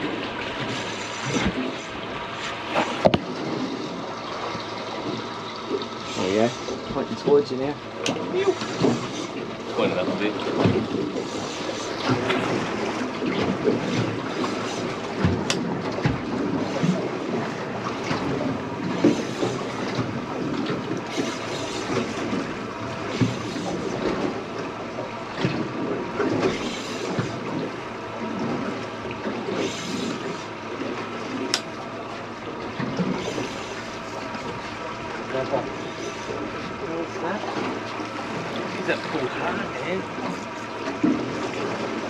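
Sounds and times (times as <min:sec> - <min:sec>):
water lapping against hull: 0:00.0 - 0:42.0
knocks on boat: 0:02.7 - 0:03.7, 0:10.0 - 0:11.2, 0:15.1 - 0:17.1.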